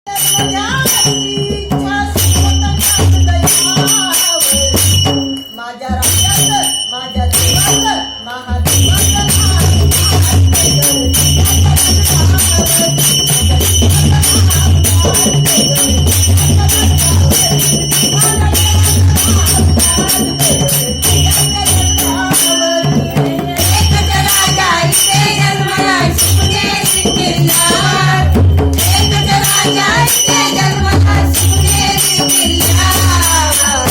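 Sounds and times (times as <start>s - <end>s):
jingling tambourine-like percussion: 0.1s - 33.9s.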